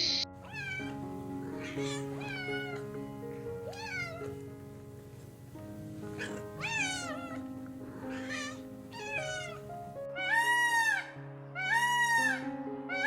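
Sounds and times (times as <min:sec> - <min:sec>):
cat meowing: 0:00.0 - 0:03.0, 0:03.6 - 0:04.4, 0:06.1 - 0:13.0
background music: 0:00.0 - 0:13.0.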